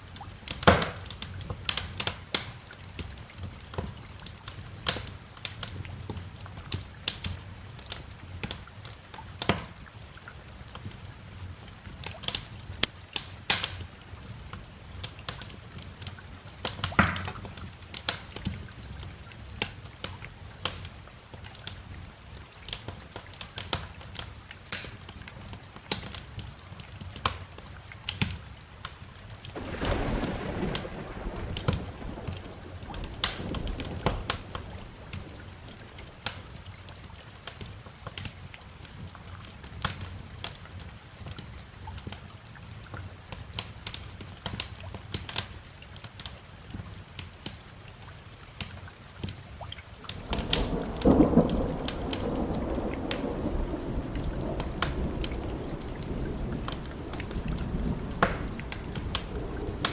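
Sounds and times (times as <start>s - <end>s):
rain hiss: 0.0s - 59.9s
wood fire crackling and popping: 0.1s - 42.3s, 42.9s - 59.9s
thunder rumble: 29.5s - 37.2s, 50.0s - 59.9s.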